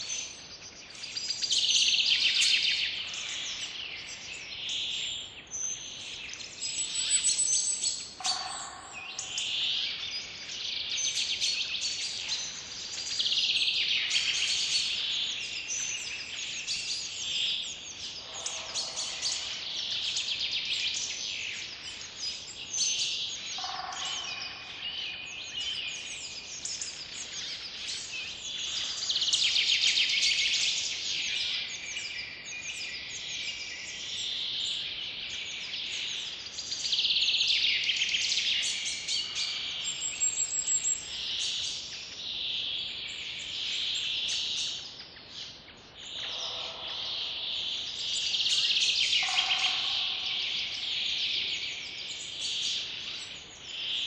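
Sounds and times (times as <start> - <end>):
songbirds chirping and trilling: 0.0 - 54.0
lower-pitched bird call: 49.1 - 50.9.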